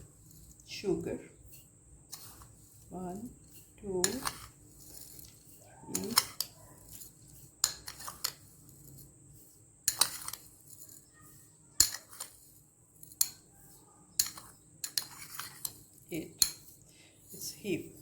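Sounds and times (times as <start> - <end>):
metal spoon clinking on bowl: 4.0 - 9.1, 9.9 - 11.0, 11.8 - 12.4, 14.2 - 16.7.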